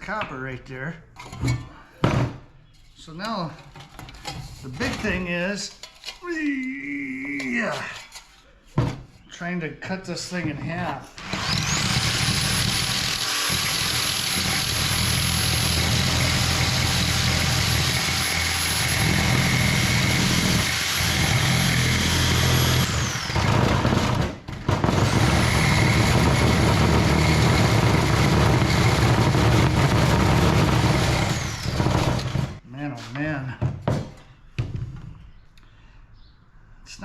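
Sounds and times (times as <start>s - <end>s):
reciprocating saw cutting metal: 11.2s - 24.2s, 24.9s - 32.6s.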